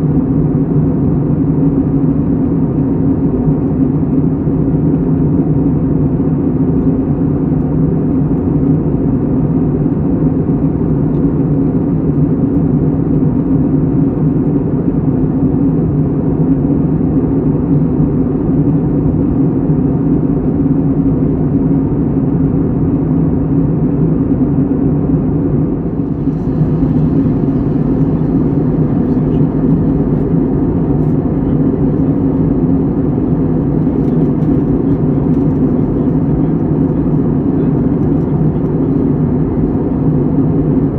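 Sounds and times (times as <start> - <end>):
constant low hum: 0.0 - 40.9
low rumbling drone: 23.6 - 40.9.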